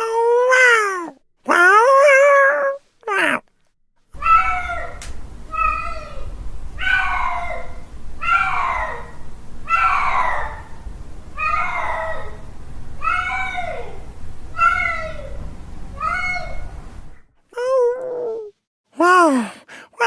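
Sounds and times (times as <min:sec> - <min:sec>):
cat yowling: 0:04.2 - 0:10.8, 0:11.4 - 0:15.4, 0:16.0 - 0:16.8
low hum: 0:04.2 - 0:17.2.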